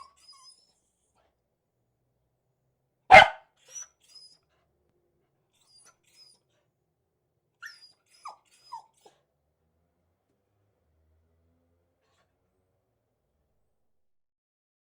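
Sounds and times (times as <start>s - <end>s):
dog whining: 0.0s - 0.8s, 3.1s - 4.4s, 5.6s - 6.5s, 7.6s - 9.2s
dog barking: 3.1s - 3.5s.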